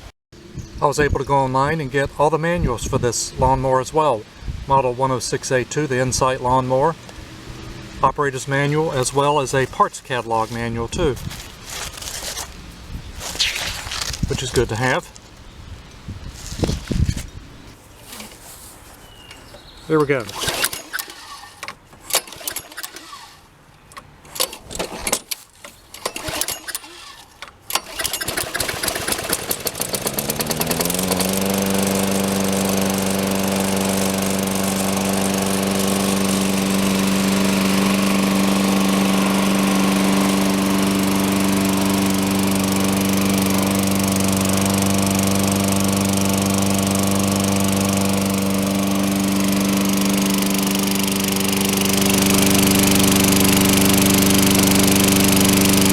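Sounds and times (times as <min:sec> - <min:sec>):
lawn mower engine starting: 0:04.7 - 0:15.4, 0:16.4 - 0:55.9.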